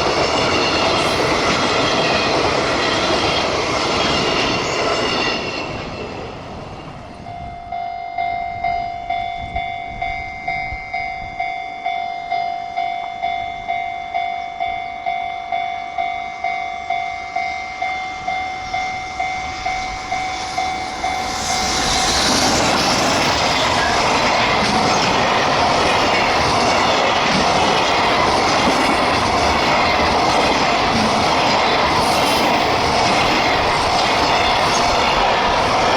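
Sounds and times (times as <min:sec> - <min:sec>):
freight train rumbling and clattering: 0:00.0 - 0:07.8, 0:17.8 - 0:35.9
level crossing warning bell: 0:07.2 - 0:21.6.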